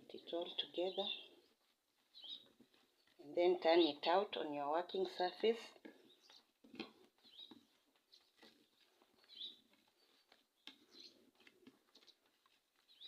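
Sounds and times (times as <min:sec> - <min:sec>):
faint bird chirps: 0:02.1 - 0:02.5.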